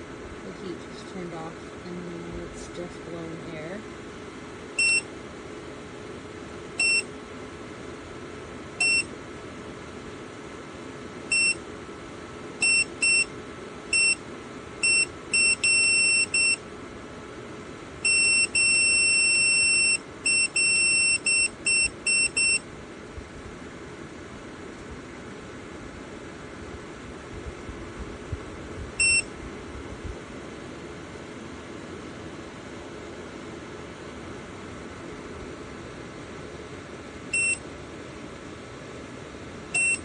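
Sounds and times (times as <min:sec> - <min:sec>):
heater fan whooshing: 0:00.0 - 0:15.7, 0:21.2 - 0:40.0
short high beeps: 0:06.8 - 0:07.0, 0:08.8 - 0:09.1, 0:29.0 - 0:29.3, 0:37.4 - 0:37.6, 0:39.8 - 0:40.0.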